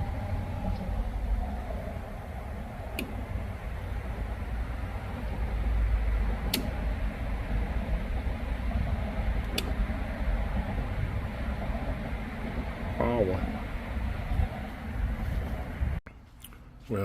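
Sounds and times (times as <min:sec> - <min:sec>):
low steady rumble: 0:00.0 - 0:16.0
circuit breaker clicks: 0:06.4 - 0:06.8, 0:09.4 - 0:09.8.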